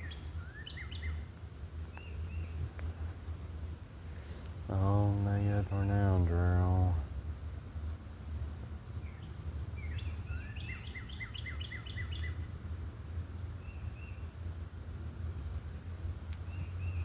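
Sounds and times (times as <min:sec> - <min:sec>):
songbird chirping: 0:00.0 - 0:12.6, 0:13.3 - 0:17.0
low background rumble: 0:00.0 - 0:17.0.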